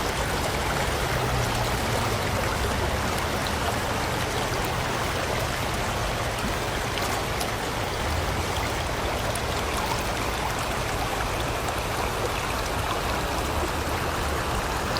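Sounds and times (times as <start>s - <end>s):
river water rushing over rocks: 0.0s - 14.9s.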